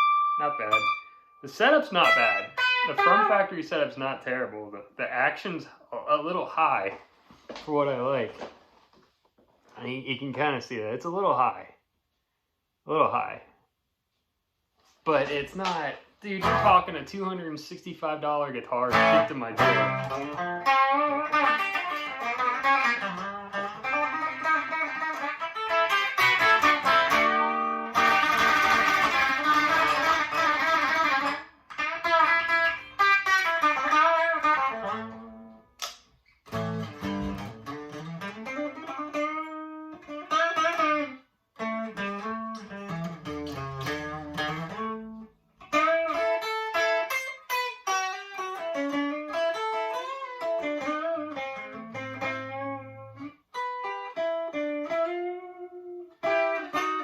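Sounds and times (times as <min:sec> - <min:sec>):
clean electric guitar: 0:00.0 - 0:04.9, 0:15.2 - 0:17.1, 0:18.6 - 0:57.0.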